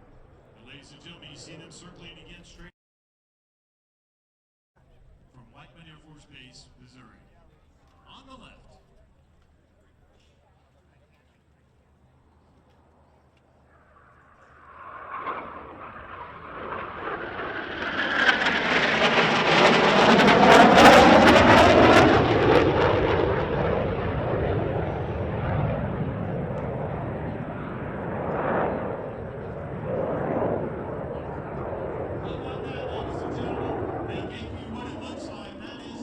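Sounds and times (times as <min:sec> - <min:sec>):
jet flyby: 0:00.7 - 0:02.7, 0:12.3 - 0:36.0.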